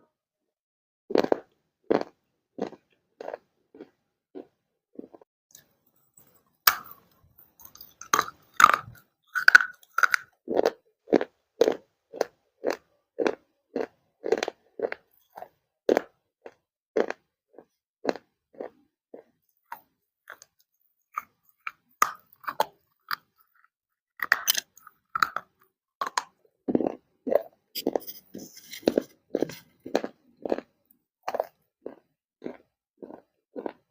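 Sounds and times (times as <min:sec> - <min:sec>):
chewing crunch: 0:01.1 - 0:33.9
crunchy clay being bitten: 0:07.6 - 0:20.5, 0:28.8 - 0:33.9.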